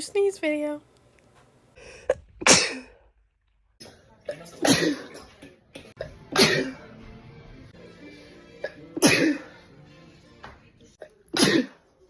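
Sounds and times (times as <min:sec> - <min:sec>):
faint music: 0:03.8 - 0:12.0.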